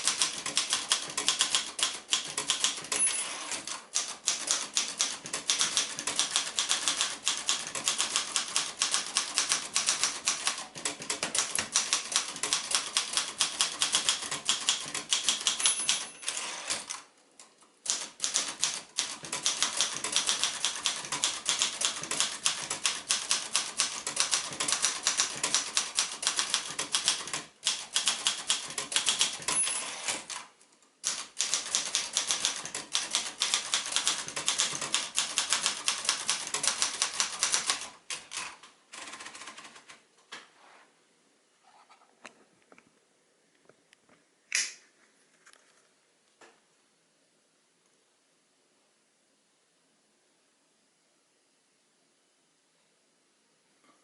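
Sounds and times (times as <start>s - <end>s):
typewriter keystrokes clattering: 0.0s - 17.1s, 17.8s - 40.0s.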